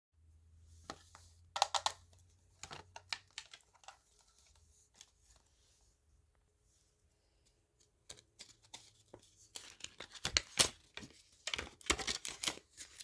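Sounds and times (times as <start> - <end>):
plastic packaging clicks: 2.6 - 4.0.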